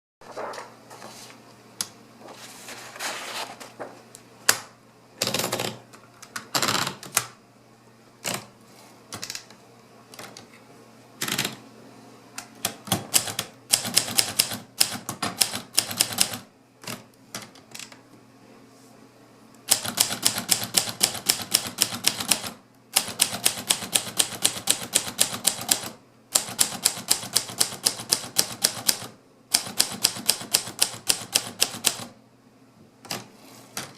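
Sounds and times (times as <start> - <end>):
manual typewriter typing: 5.2 - 7.3, 12.6 - 17.0, 19.7 - 32.1.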